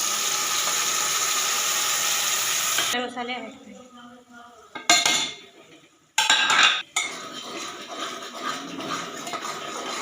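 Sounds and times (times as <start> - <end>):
metal spoon scraping a pan: 6.2 - 10.0.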